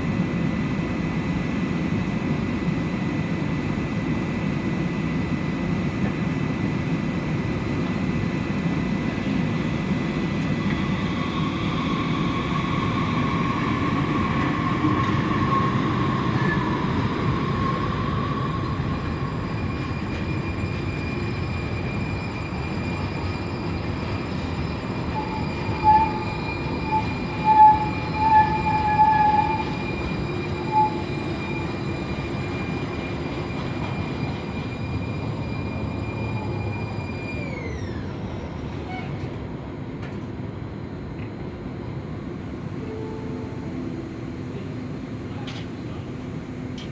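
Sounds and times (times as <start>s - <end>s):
train rumbling on rails: 0.0s - 46.9s
thin high whine: 19.0s - 37.8s
short high squeaks: 25.1s - 32.0s.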